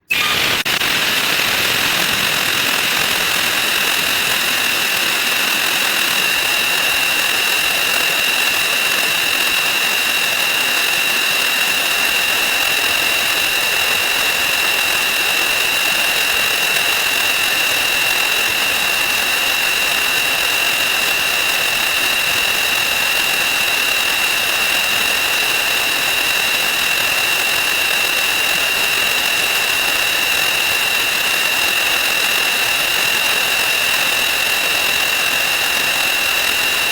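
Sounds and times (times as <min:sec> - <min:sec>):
high steady whine: 0:00.0 - 0:10.3.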